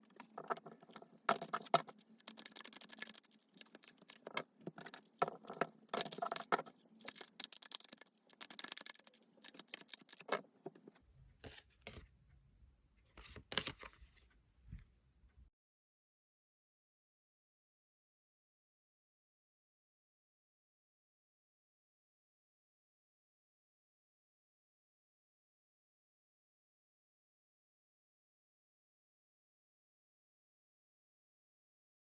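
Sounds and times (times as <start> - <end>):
cards being shuffled: 0.1 - 12.0.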